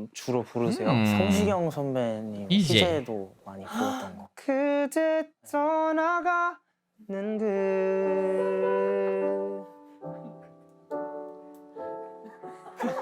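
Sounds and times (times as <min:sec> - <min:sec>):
man singing a ballad: 0:04.3 - 0:09.7
piano chords: 0:08.4 - 0:13.0.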